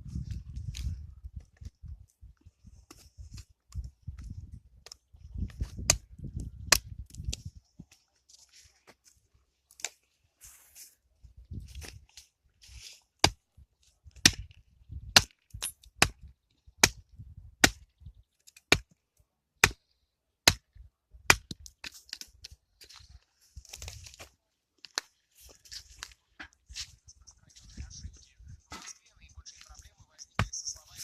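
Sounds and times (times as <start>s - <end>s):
axe chopping firewood: 5.6s - 7.4s, 13.2s - 13.4s, 14.1s - 17.0s, 17.6s - 17.9s, 18.5s - 19.0s, 19.6s - 19.8s, 20.4s - 22.3s.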